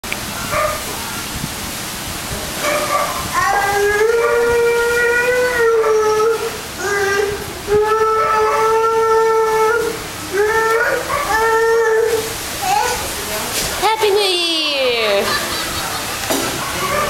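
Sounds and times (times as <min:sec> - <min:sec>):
dog howling: 0:02.6 - 0:07.1, 0:07.7 - 0:12.3, 0:16.8 - 0:17.0.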